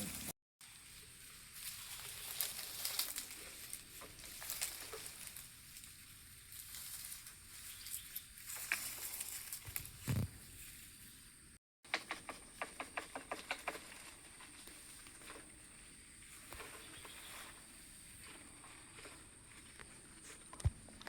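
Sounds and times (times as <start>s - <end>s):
leaves crackling and rustling: 0.0s - 11.4s.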